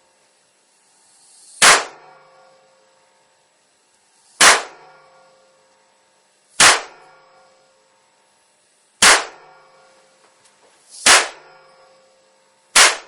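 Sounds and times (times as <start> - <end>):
loud electrical discharge cracks: 1.2 - 2.3, 4.2 - 5.1, 6.6 - 7.2, 9.0 - 9.7, 10.9 - 11.6, 12.7 - 13.0.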